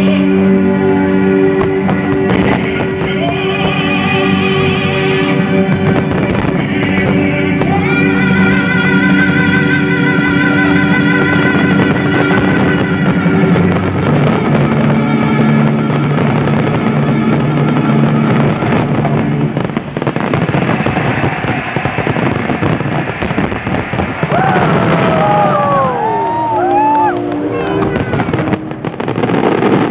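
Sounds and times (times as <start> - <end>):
fireworks crackling and banging: 1.3 - 29.9
fireworks whistles: 11.1 - 26.1.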